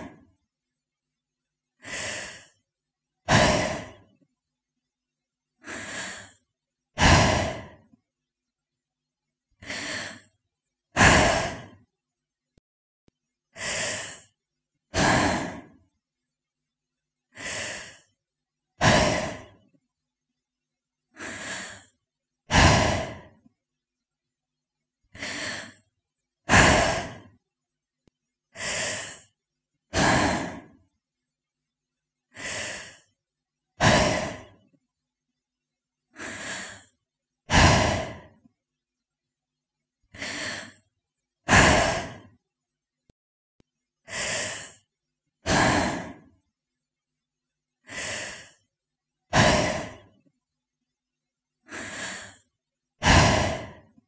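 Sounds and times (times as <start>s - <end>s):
woman breathing slowly: 1.8s - 4.3s, 5.6s - 8.0s, 9.6s - 11.9s, 13.5s - 15.9s, 17.3s - 18.2s, 18.8s - 19.8s, 21.1s - 23.5s, 25.1s - 27.4s, 28.5s - 30.9s, 32.3s - 33.2s, 33.8s - 34.8s, 36.1s - 38.5s, 40.1s - 40.9s, 41.5s - 42.4s, 44.0s - 46.3s, 47.8s - 48.7s, 49.3s - 50.2s, 51.6s - 54.0s.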